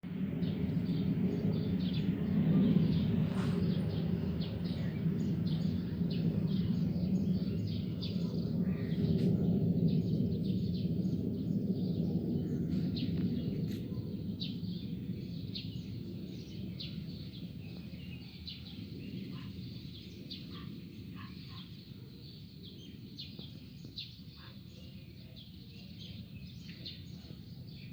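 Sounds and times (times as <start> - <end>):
low droning hum: 0.1 - 17.9.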